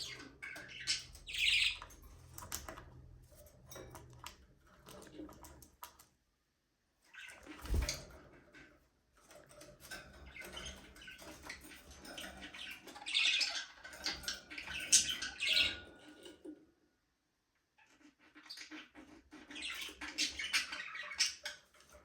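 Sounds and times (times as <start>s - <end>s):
budgerigars chirping: 0.0s - 1.8s.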